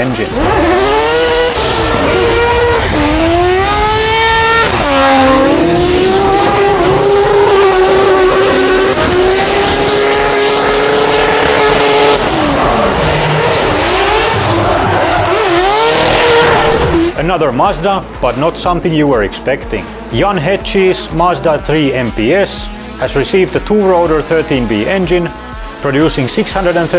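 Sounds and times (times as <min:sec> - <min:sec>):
rotary engine revving: 0:00.0 - 0:17.2.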